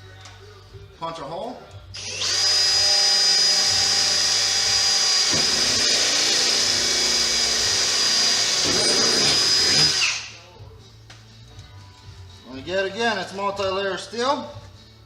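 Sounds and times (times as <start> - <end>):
electric drill whining: 2.0 - 10.3.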